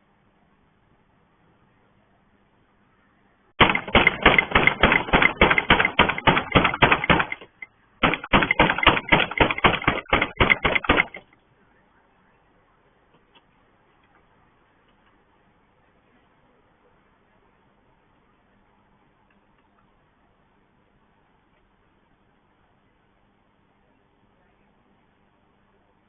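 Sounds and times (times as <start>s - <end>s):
loud banging on a gate: 3.6s - 11.3s.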